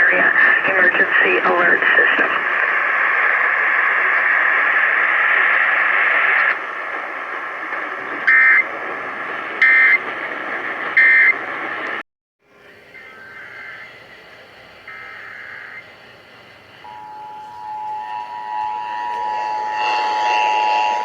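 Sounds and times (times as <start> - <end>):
steady radio hiss: 0.0 - 21.0
harsh data bursts: 4.9 - 11.5, 12.9 - 16.0, 16.6 - 21.0.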